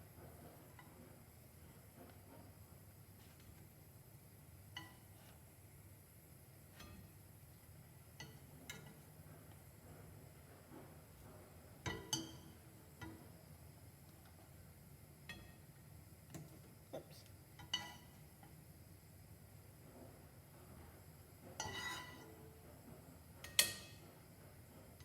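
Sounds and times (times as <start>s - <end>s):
dishes and utensils clinking: 17.6s - 18.2s, 21.5s - 22.4s.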